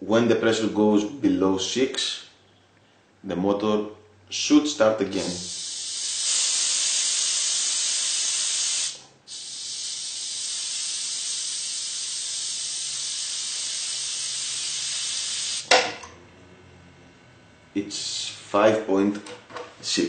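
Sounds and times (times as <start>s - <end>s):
compressed air hissing: 5.1s - 15.7s.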